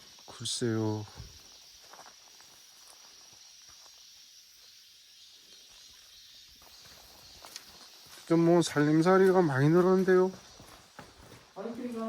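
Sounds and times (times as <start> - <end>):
insects chirring: 0.0 - 12.0
soft ticks and rustles: 6.7 - 12.0.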